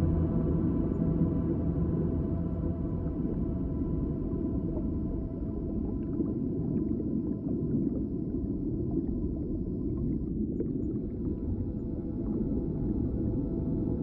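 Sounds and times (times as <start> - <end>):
sustained drone tones: 0.0 - 5.9, 11.0 - 14.0
deep rumble of water: 0.0 - 14.0
faint bubbling ticks: 5.5 - 12.6.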